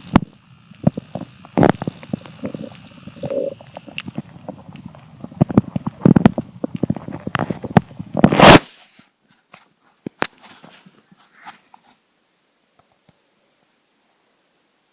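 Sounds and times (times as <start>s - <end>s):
scattered clicks: 0.0s - 8.6s
stomach gurgling and rumbling: 0.0s - 8.6s.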